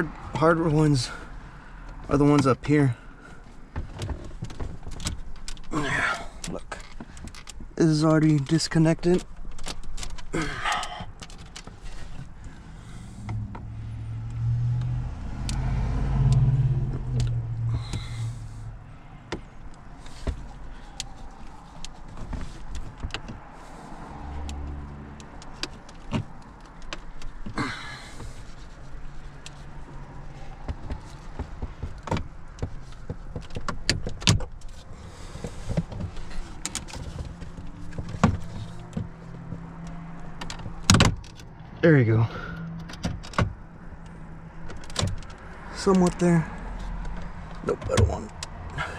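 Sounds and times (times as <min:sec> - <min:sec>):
hands bumping dashboard: 0:29.8 - 0:41.3, 0:47.0 - 0:48.6.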